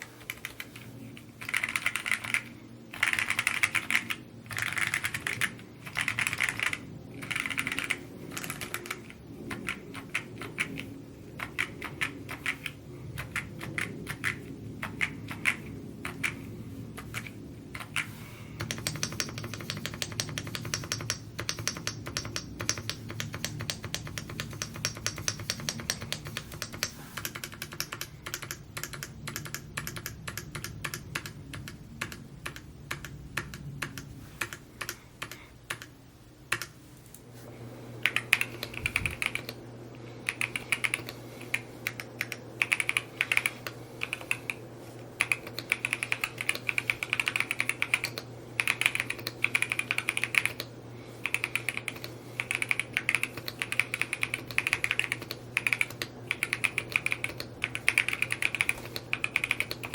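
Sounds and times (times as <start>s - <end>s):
mechanical keyboard typing: 0.2s - 16.4s, 17.0s - 36.8s, 38.0s - 39.6s, 40.2s - 44.6s, 45.2s - 59.9s.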